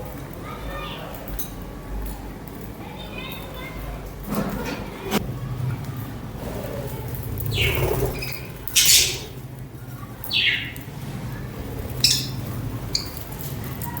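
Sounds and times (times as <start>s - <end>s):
steady low hum: 5.1s - 12.9s
budgerigars chirping and squawking: 7.4s - 9.4s, 10.2s - 10.9s, 11.6s - 13.3s.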